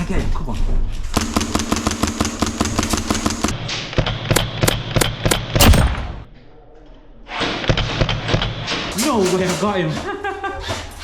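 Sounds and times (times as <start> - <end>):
airsoft rifle sharp shots: 1.2 - 3.6, 4.6 - 6.3.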